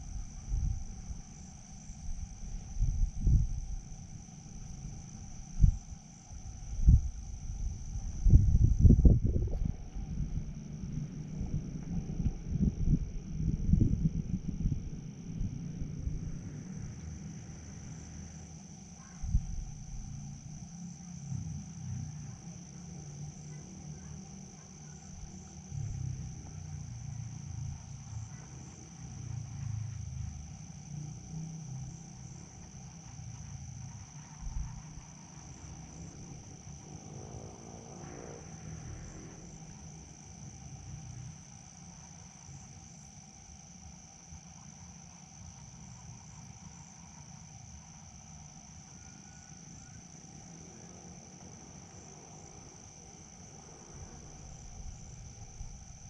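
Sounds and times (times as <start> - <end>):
crickets chirring: 0.0 - 56.0
low rumble: 2.1 - 17.9.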